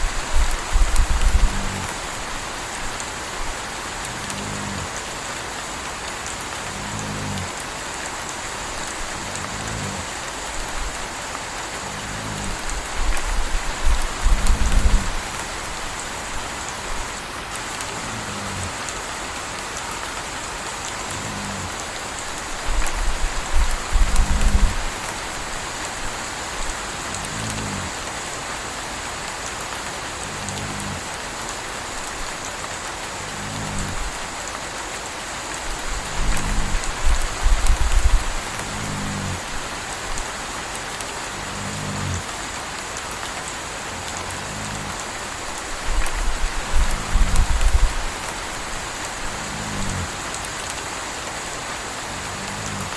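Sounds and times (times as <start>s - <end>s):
steady rain: 0.0s - 52.9s
puppy snoring softly: 0.1s - 2.0s, 4.0s - 5.1s, 6.6s - 7.6s, 8.6s - 19.1s, 21.0s - 25.2s, 27.0s - 28.0s, 30.2s - 31.1s, 33.2s - 34.2s, 35.7s - 40.4s, 41.3s - 42.3s, 44.0s - 50.2s, 52.1s - 52.9s
deep low rumble: 11.8s - 17.1s.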